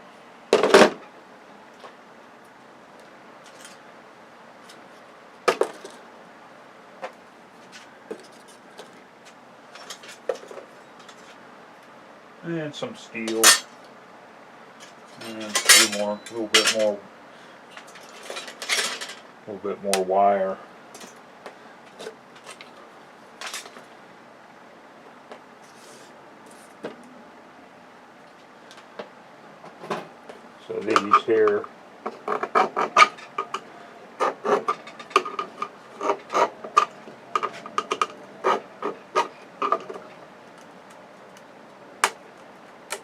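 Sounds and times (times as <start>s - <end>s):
hard scrap parts clacking: 13.3s - 13.8s, 14.8s - 17.0s, 17.7s - 19.2s, 23.4s - 23.8s, 30.8s - 40.1s
small parts clinking: 13.3s - 13.8s, 14.8s - 17.0s, 17.7s - 19.3s, 23.4s - 23.8s.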